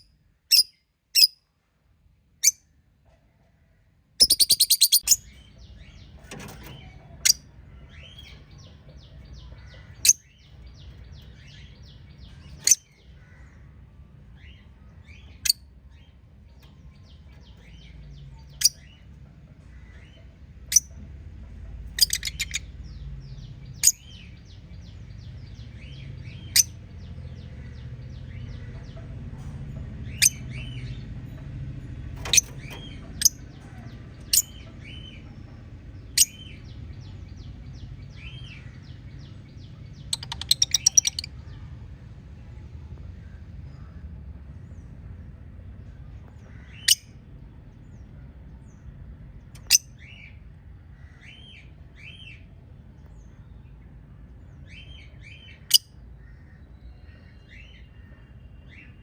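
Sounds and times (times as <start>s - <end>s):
rapid bird trill: 4.2s - 5.3s
sharp loud bird calls: 4.2s - 5.4s
budgerigars chirping and chattering: 4.2s - 13.5s, 21.8s - 22.8s, 32.1s - 37.1s, 39.7s - 41.4s, 49.6s - 50.3s.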